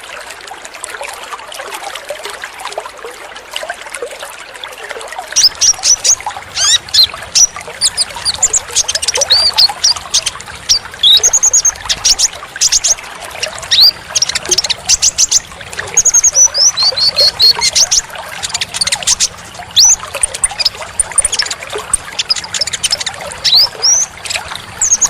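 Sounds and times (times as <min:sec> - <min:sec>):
trickling water: 0:00.0 - 0:25.0
bird chirping and whistling: 0:05.4 - 0:13.0, 0:13.7 - 0:25.0.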